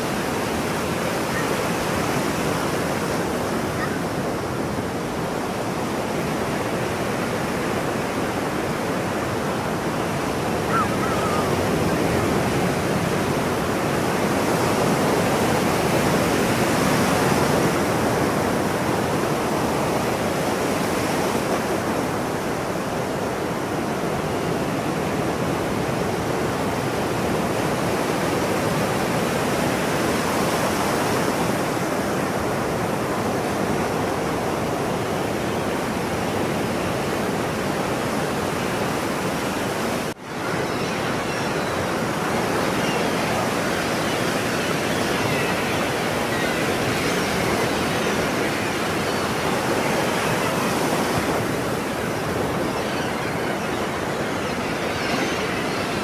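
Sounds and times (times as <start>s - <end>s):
ocean surf washing: 0.0s - 56.0s
seagull cry: 3.6s - 4.2s, 10.1s - 13.1s, 40.3s - 56.0s.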